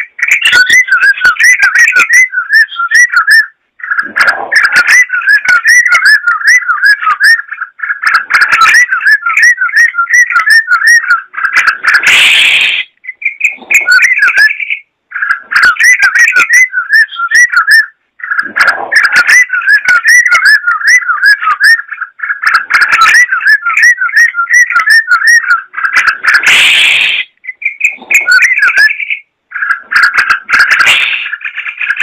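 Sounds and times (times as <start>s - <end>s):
bulbul singing warbled notes: 0.0s - 32.0s
harsh rasping bird call: 0.4s - 22.4s, 23.0s - 29.8s, 30.6s - 32.0s.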